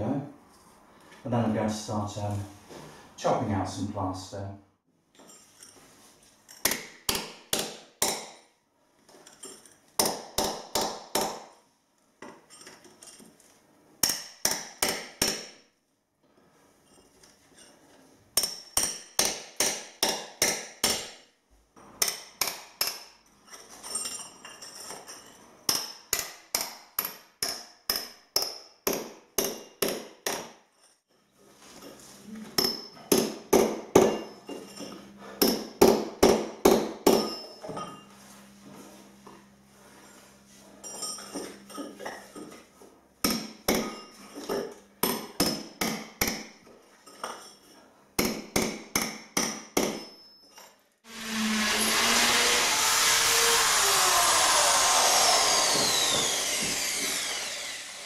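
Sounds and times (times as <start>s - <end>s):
hammer striking chisel: 6.6s - 8.5s, 10.0s - 11.6s, 14.0s - 15.7s, 18.4s - 21.3s, 22.0s - 23.2s, 25.7s - 30.7s, 32.6s - 34.6s, 35.4s - 37.9s, 43.2s - 46.7s, 48.2s - 50.6s, 54.4s - 58.0s.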